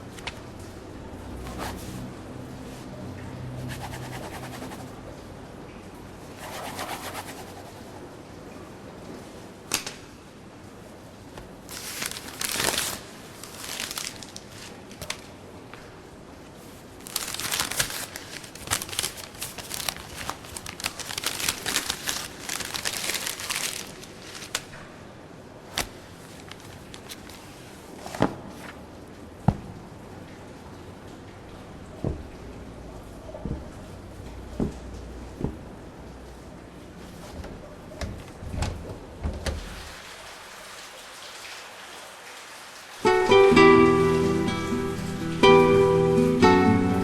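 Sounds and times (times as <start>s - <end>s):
crinkling rustling noise: 0.0s - 3.0s, 10.7s - 29.4s.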